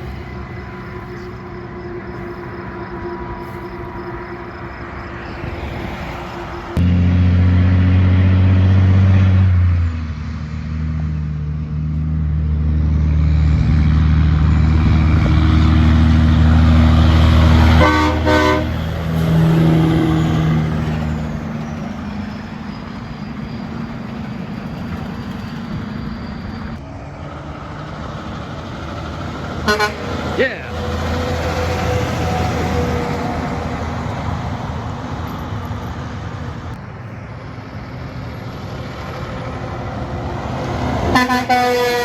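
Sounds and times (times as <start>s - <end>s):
heavy vehicle air horn: 0.0s - 4.5s, 17.6s - 20.6s, 29.6s - 32.8s, 41.0s - 42.0s
vehicle passing: 0.0s - 25.9s, 26.6s - 42.0s.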